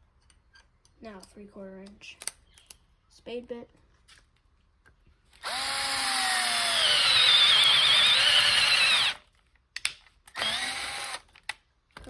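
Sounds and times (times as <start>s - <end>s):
power drill motor whine: 5.4s - 9.2s, 10.3s - 11.2s.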